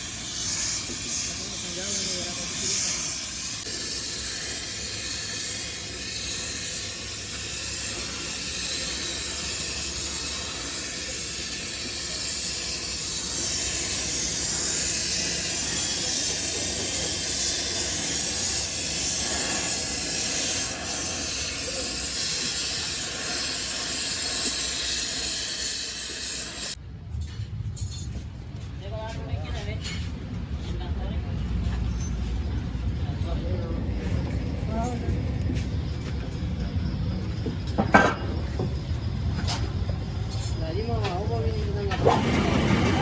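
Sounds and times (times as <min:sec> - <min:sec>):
loud steady hiss: 0:00.0 - 0:26.8.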